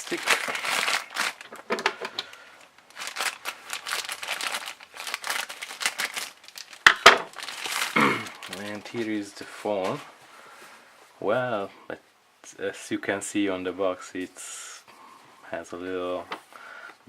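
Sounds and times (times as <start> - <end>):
plastic wrap crinkling: 0.0 - 10.1.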